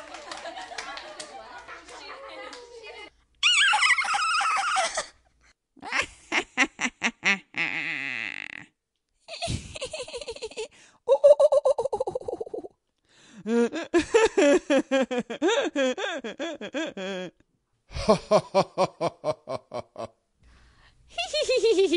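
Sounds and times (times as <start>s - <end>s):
children laughing and giggling: 0.1s - 5.2s, 9.3s - 10.7s
child squealing: 3.4s - 5.1s.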